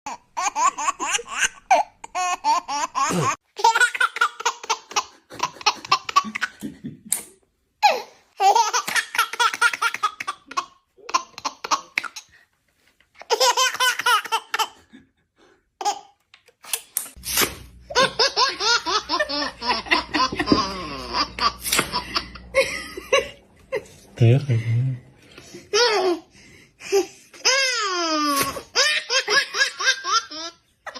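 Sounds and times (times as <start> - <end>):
baby laughing: 0.1 - 7.2, 7.8 - 12.4, 13.2 - 15.0, 15.8 - 16.2, 17.9 - 23.9, 26.9 - 30.9.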